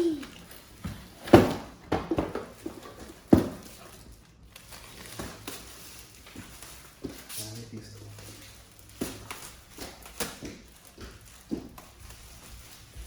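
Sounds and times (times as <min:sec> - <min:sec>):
cardboard box knocks and rustles: 0:00.8 - 0:03.7.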